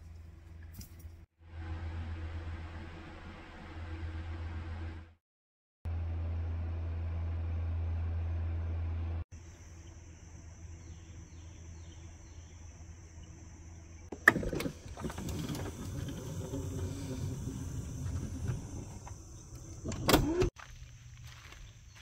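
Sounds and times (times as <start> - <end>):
low hum: 0.0 - 5.2
high insect drone: 9.4 - 14.1
insect chirps: 9.4 - 14.2.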